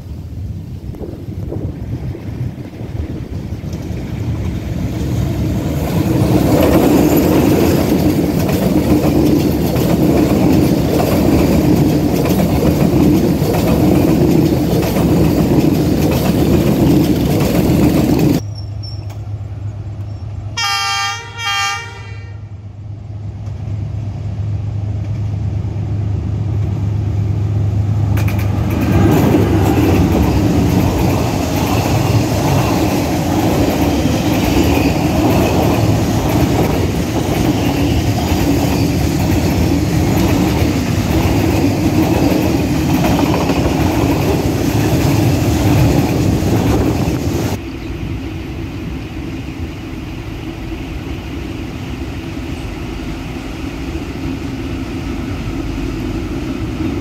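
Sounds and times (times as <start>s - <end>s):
train wheels rumbling on rails: 0.0s - 57.0s
train horn blasts: 20.5s - 22.6s.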